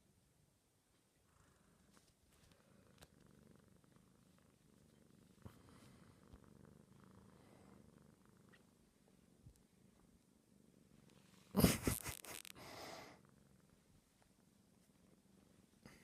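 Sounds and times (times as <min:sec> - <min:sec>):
kitten purring: 0:01.1 - 0:16.0
faint clicks: 0:02.0 - 0:03.3.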